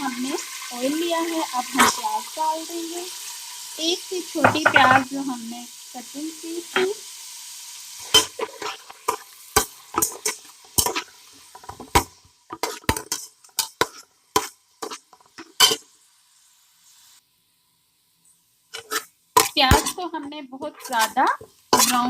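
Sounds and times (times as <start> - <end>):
onion sizzling in hot oil: 0.0 - 22.0
spoon knocking against pot: 4.4 - 5.1.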